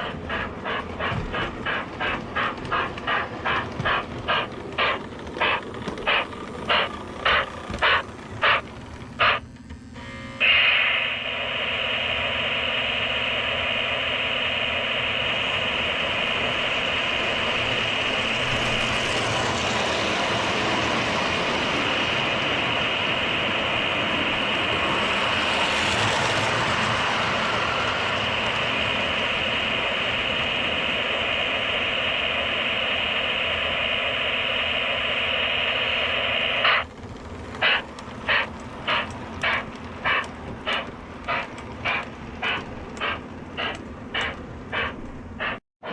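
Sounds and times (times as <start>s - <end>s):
rhythmic pulsing: 0.0s - 9.4s, 10.4s - 45.6s
model train whirring hum: 0.0s - 45.9s.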